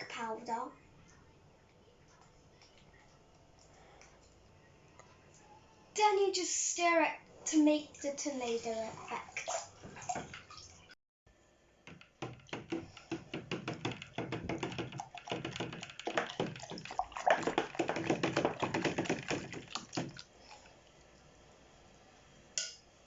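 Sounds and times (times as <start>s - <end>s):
stirrer knocking container sides: 11.9s - 20.2s
water being stirred fast: 12.4s - 20.7s
water swishing: 15.0s - 20.7s.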